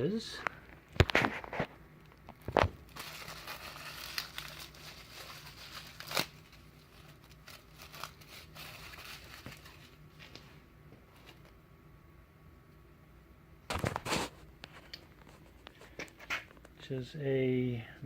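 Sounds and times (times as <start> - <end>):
packaging crinkling: 1.0 - 10.4.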